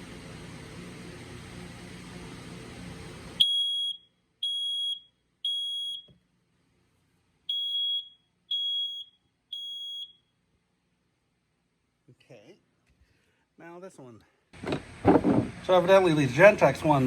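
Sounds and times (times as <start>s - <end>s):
smoke alarm beeping: 3.4s - 6.1s, 7.5s - 10.4s.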